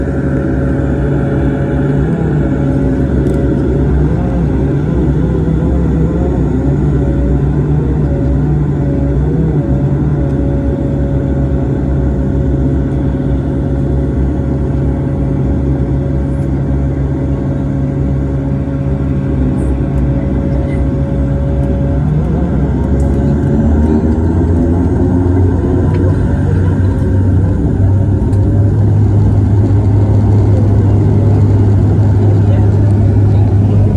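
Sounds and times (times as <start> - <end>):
turboprop engines droning: 0.0 - 33.9.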